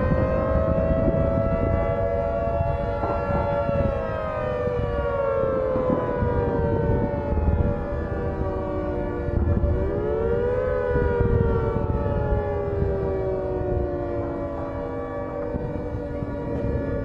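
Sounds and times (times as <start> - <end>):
two-tone siren: 0.0 - 17.0.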